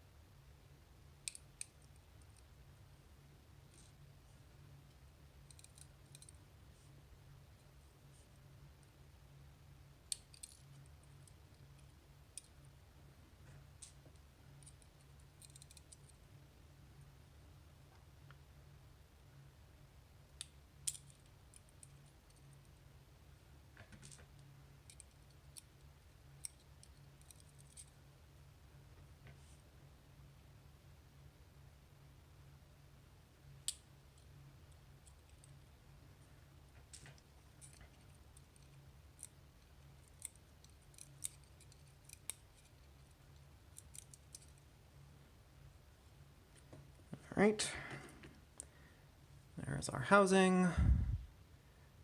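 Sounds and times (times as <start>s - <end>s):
low steady hum: 0.0s - 52.0s
small metal clicks and taps: 5.5s - 6.4s, 20.4s - 22.5s, 36.8s - 44.6s
clicks of small metal lock parts: 14.6s - 16.2s, 26.4s - 27.9s, 40.0s - 44.6s
low hum: 50.6s - 51.9s.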